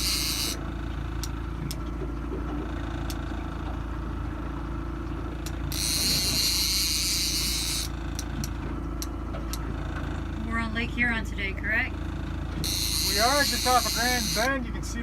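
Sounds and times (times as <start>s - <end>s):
fishing reel drag buzzing: 0.0s - 0.6s, 5.4s - 8.3s, 12.6s - 14.6s
boat engine running: 0.0s - 15.0s.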